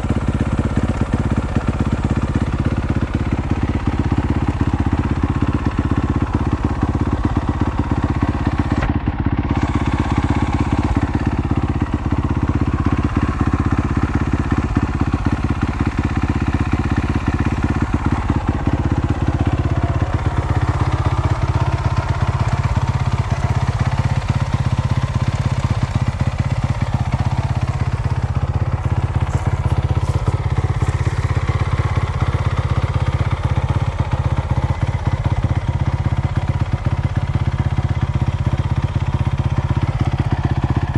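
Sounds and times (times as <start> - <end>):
motorcycle engine idling: 0.0 - 40.9.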